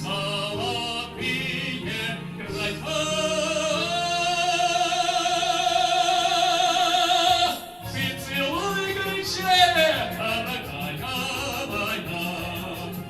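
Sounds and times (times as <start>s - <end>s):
musical accompaniment: 0.0s - 13.0s
person singing with vibrato: 0.0s - 13.0s.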